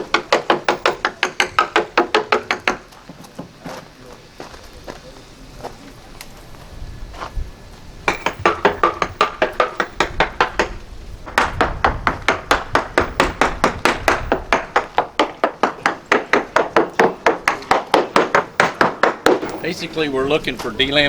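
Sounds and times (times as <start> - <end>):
mallet tapping on hull: 0.0 - 2.9, 8.1 - 19.6.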